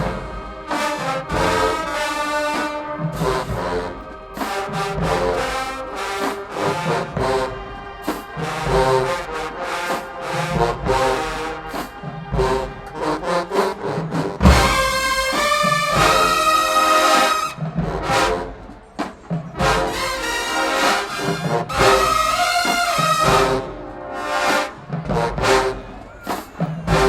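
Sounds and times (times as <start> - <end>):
drum strokes: 0.0 - 27.0
marching band brass melody: 0.0 - 27.0
heavy drum hit: 14.4 - 16.4.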